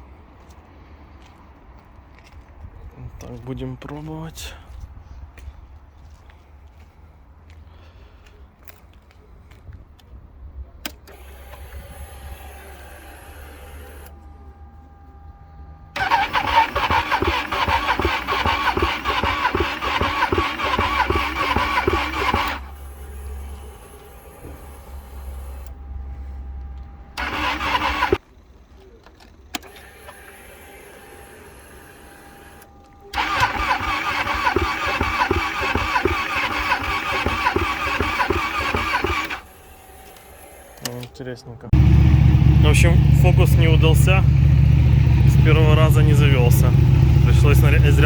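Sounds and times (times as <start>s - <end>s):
motorcycle engine cranking: 16.0s - 24.0s, 27.2s - 28.2s, 32.4s - 41.0s, 41.8s - 48.0s.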